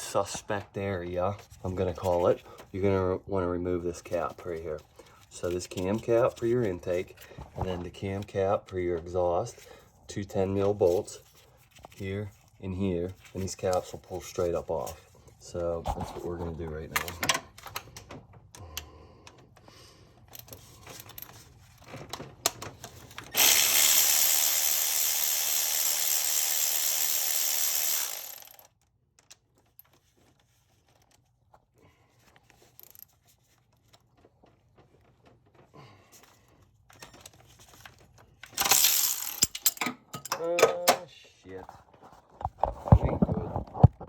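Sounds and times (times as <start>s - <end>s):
tools and parts clattering: 20.3s - 24.1s, 36.9s - 41.0s
cordless power tool running: 23.3s - 28.7s, 38.7s - 39.4s.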